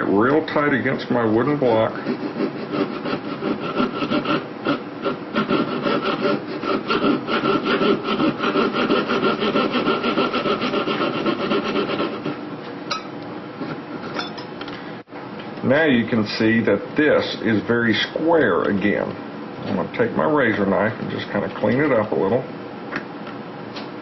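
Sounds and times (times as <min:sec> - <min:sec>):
saw blade rasping on metal: 0:01.6 - 0:12.4.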